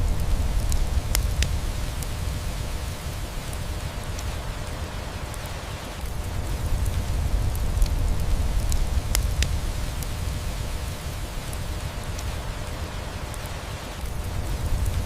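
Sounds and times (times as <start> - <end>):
steady rain: 0.0 - 15.0
wood fire crackling and popping: 0.0 - 15.0.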